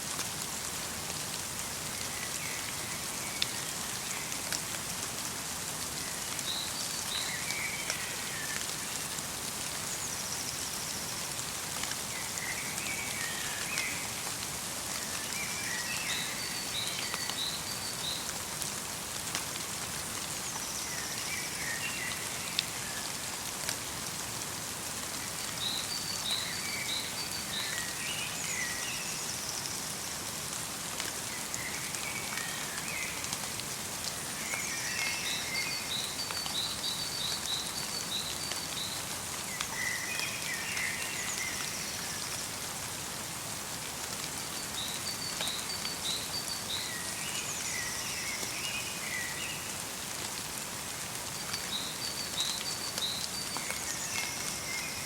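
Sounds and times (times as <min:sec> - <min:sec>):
light rain pattering: 0:00.0 - 0:55.0
small songbirds chirping: 0:06.0 - 0:18.7, 0:25.0 - 0:30.4, 0:31.2 - 0:42.6, 0:44.3 - 0:50.1, 0:51.1 - 0:55.0.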